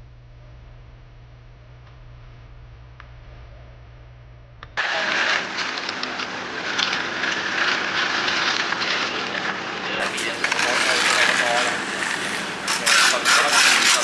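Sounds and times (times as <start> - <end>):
faint low hum: 0.0 - 7.8
engine-driven machine running: 4.8 - 14.0.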